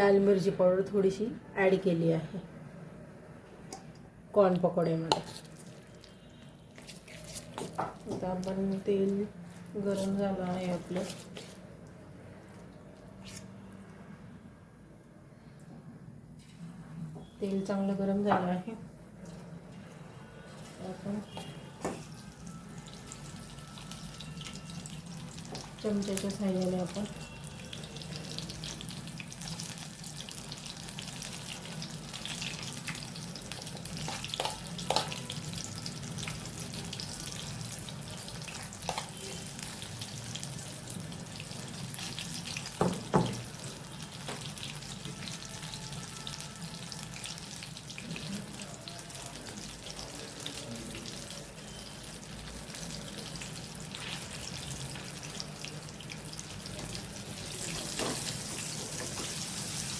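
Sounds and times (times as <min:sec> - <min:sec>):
batter sizzling in hot oil: 0:20.8 - 0:59.9.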